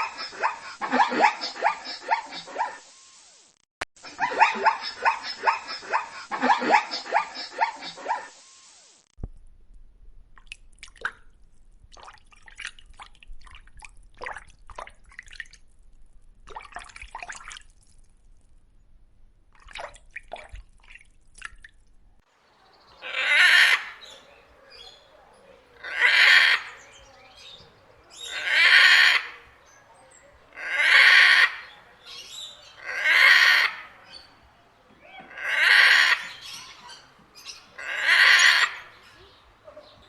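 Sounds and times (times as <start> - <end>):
loud drawn-out animal call: 0.0 - 3.0, 4.0 - 8.5, 22.6 - 40.0
rapidly repeated animal calls: 0.0 - 3.1, 4.0 - 8.6, 22.4 - 40.0
faint clicking and dripping: 9.2 - 18.9, 19.5 - 22.1.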